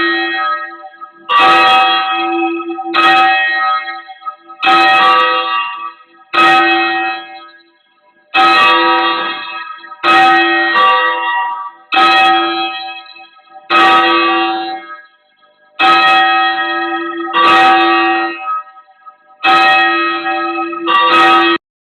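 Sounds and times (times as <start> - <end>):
church bells ringing: 0.0 - 21.6.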